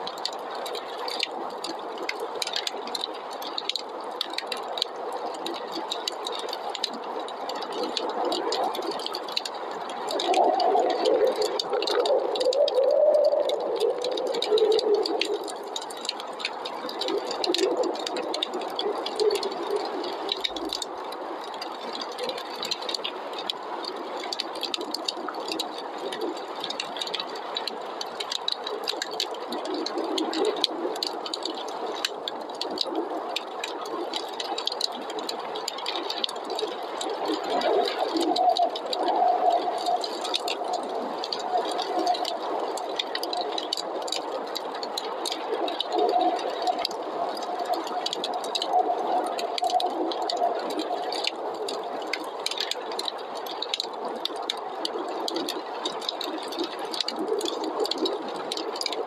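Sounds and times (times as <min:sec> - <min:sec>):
wood fire crackling and popping: 0:00.0 - 0:59.0
snowstorm wind howling: 0:10.0 - 0:15.8, 0:36.5 - 0:44.4, 0:45.4 - 0:52.3.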